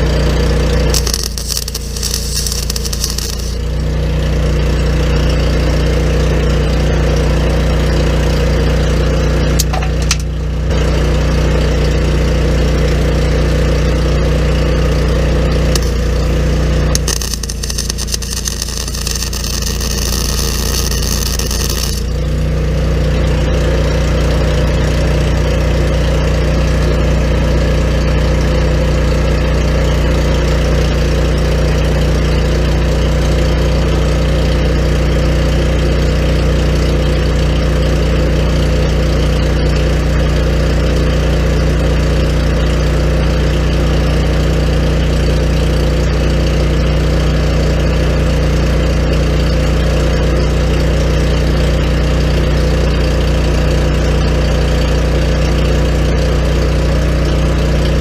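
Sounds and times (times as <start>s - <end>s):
low machine hum: 0.0s - 26.4s
bright hiss: 1.0s - 3.6s, 17.0s - 22.1s.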